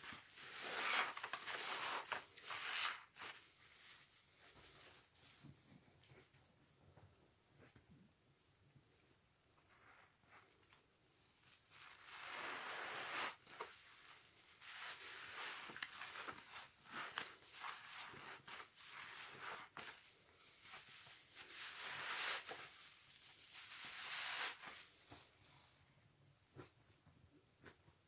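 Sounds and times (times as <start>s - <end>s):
soapy sponge squelching: 11.7s - 22.8s.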